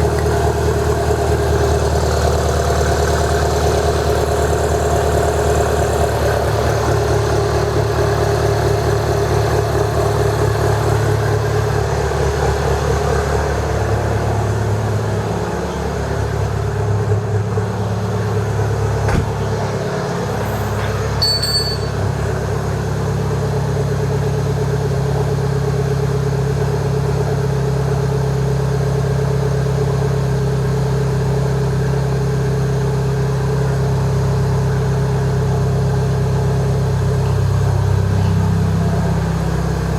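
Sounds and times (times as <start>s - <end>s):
car engine idling with open exhaust: 0.0s - 39.9s.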